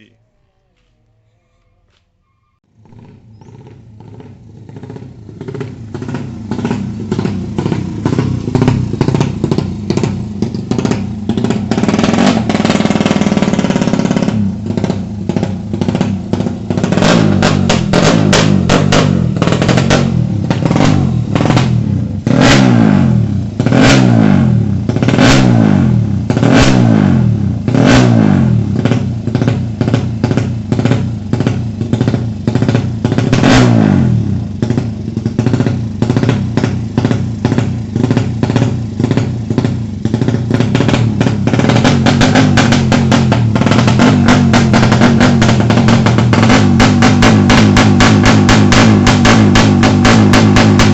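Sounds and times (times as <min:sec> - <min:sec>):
motorcycle engine revving: 0:02.6 - 0:50.9.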